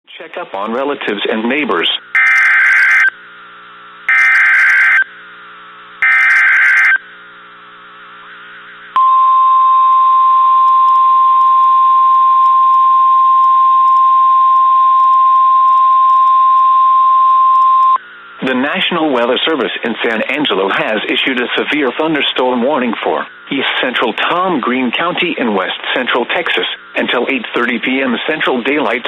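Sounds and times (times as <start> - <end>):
data header bursts: 2.1 - 3.1, 4.1 - 5.1, 6.0 - 7.0
steady warning alarm tone: 2.1 - 3.2, 4.1 - 5.1, 6.0 - 7.1.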